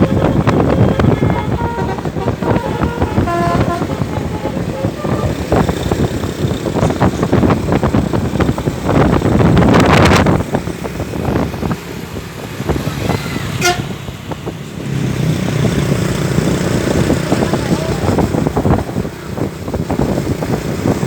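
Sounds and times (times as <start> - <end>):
short horn toot: 0.0 - 5.6, 13.5 - 14.0
vehicles passing: 0.0 - 21.0.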